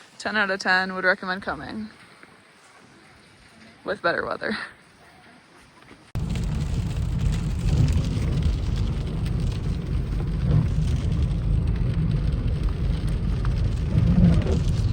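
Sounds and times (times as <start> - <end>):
wind buffeting microphone: 6.2 - 14.9.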